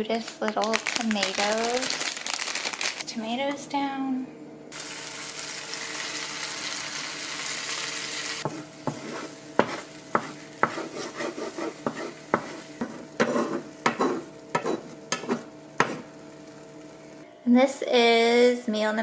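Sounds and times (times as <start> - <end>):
tomatoes sizzling in a frying pan: 4.7 - 17.3
utensil scraping a pan: 8.5 - 16.1.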